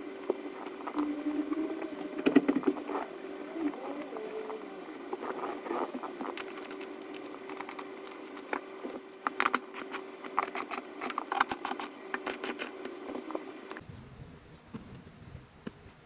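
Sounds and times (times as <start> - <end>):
faint steady hum: 0.0 - 16.0
parts and tools clicking: 6.1 - 13.8.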